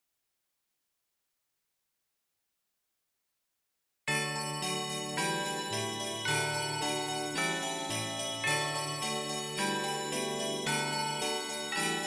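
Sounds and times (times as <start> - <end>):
instrumental christmas music: 4.1 - 12.0
jingling sleigh bells: 4.1 - 12.0.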